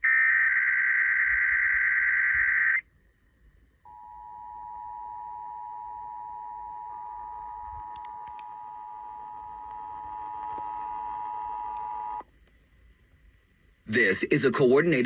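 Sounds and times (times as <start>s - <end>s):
fainter higher tone: 3.9s - 12.2s.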